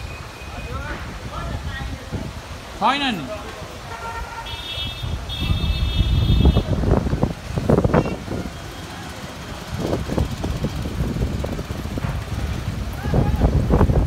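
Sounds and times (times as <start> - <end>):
wind buffeting microphone: 0.7 - 2.8, 5.0 - 14.0
vehicle horn: 3.9 - 6.7.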